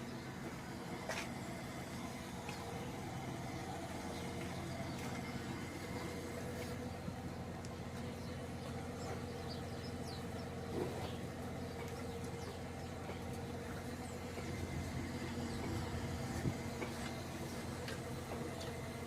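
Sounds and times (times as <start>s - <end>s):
motor humming: 0.0s - 19.0s.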